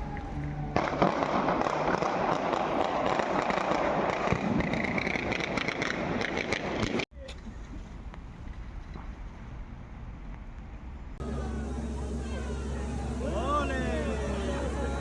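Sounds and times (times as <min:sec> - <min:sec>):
firecrackers crackling: 0:00.0 - 0:08.7.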